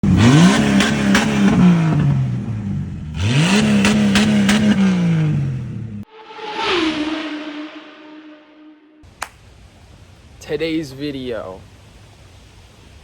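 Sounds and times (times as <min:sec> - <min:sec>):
car engine revving: 0:00.0 - 0:09.0.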